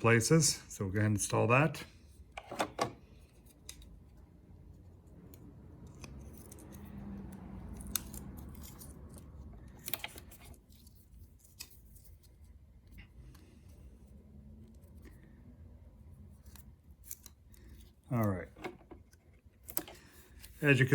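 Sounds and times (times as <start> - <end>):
scissors snipping tape: 5.3 - 10.3.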